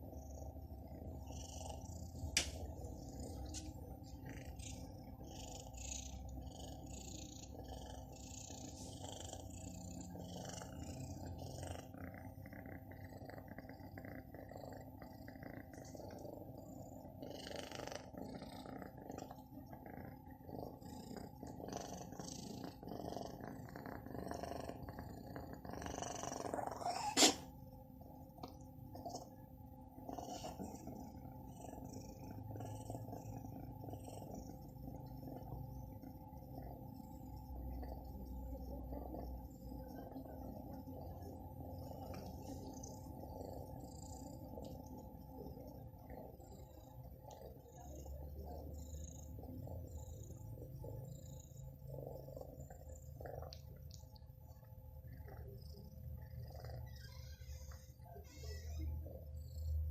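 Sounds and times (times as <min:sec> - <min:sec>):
cat purring: 0:00.0 - 0:59.9.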